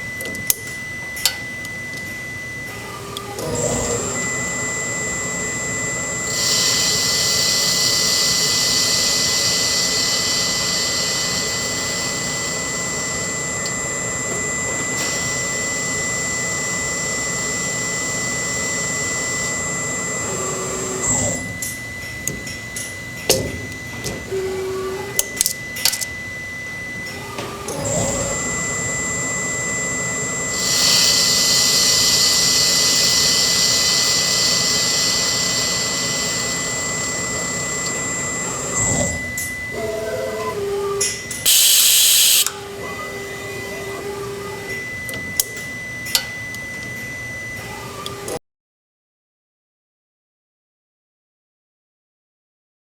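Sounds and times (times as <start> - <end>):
lathe spindle whine: 0.0 - 48.4
machine hiss: 3.5 - 20.0, 29.5 - 39.4, 41.4 - 42.6.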